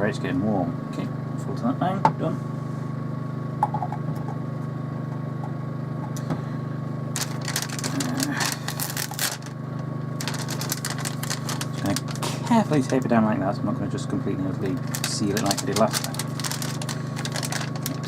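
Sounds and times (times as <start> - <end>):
generator engine humming: 0.0 - 18.0
plastic packaging crackling: 7.1 - 13.1, 14.6 - 18.0.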